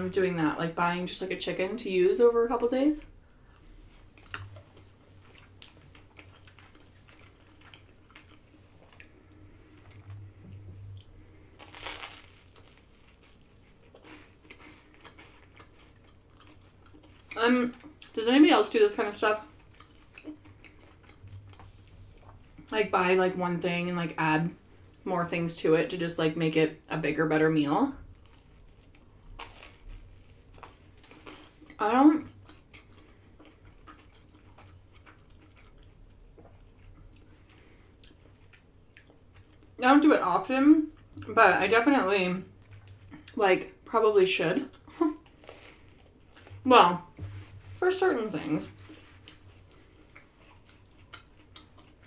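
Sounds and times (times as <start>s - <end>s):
low steady hum: 0.0s - 52.0s
soft chewing: 2.9s - 22.8s, 28.0s - 39.8s, 42.4s - 43.9s, 44.5s - 52.0s
crunchy bite: 11.6s - 14.0s.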